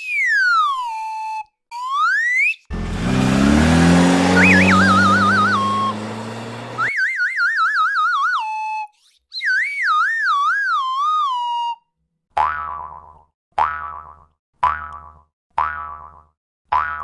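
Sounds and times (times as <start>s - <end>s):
wobbling cartoon whistle tone: 4.4s - 5.9s.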